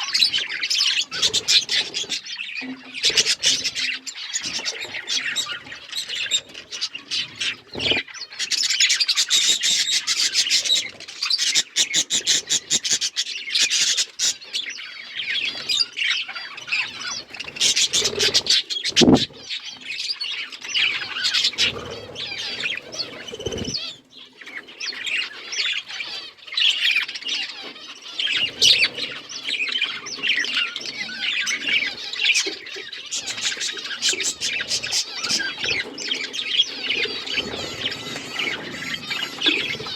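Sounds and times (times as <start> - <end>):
budgerigars chattering: 0.0 - 39.9.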